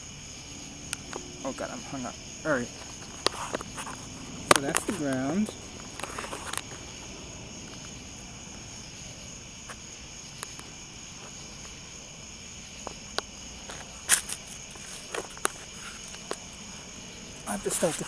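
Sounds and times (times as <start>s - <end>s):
crickets chirping: 0.0s - 18.0s
sharp clicks and scuffs: 2.7s - 6.9s, 12.8s - 16.5s.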